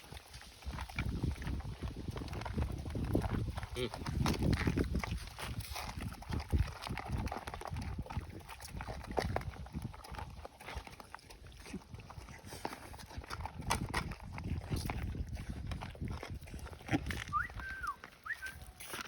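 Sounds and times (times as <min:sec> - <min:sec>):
dogs chewing food: 0:00.0 - 0:19.0.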